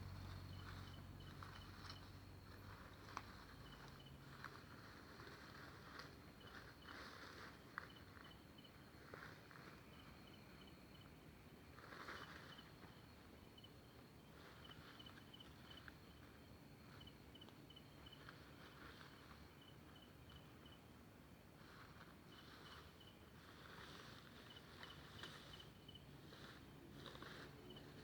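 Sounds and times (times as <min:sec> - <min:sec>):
faint high chirp: 0:00.3 - 0:02.1
rustling in leaf litter: 0:02.5 - 0:08.2, 0:21.5 - 0:28.0.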